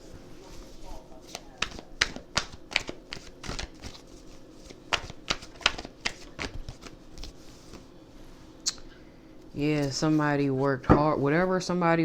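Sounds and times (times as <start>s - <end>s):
cards being shuffled: 0.5s - 7.9s.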